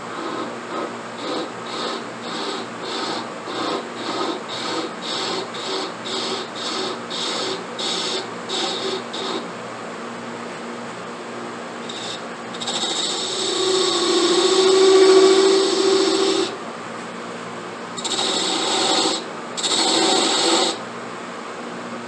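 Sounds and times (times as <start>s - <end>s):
rasp scraping pipe bowl: 0.0s - 9.5s, 11.8s - 16.6s, 18.0s - 20.8s.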